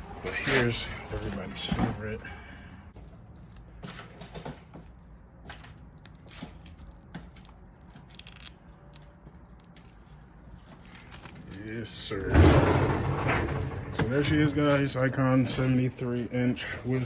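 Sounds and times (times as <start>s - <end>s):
plastic film peeling and crackling: 3.0s - 12.3s.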